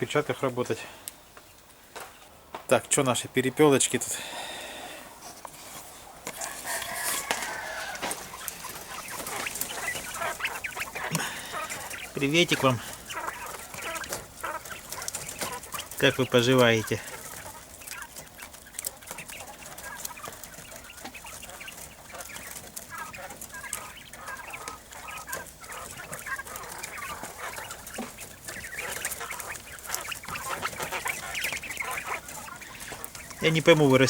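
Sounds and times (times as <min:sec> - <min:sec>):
quail chirping: 0:06.0 - 0:34.0.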